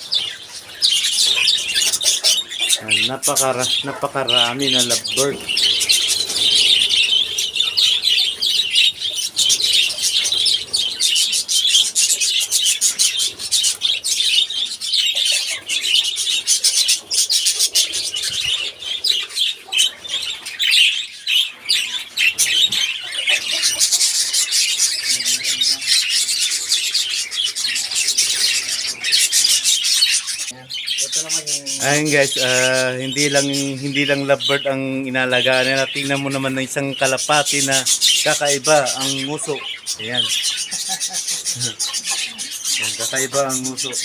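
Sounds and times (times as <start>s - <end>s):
flock of birds chattering: 0.0s - 44.0s.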